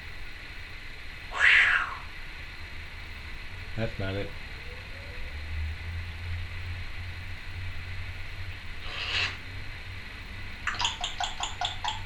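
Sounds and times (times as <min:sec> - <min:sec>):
parrot hissing: 0:01.3 - 0:02.1, 0:08.8 - 0:09.4
parrot clicks and chirps: 0:10.7 - 0:12.0.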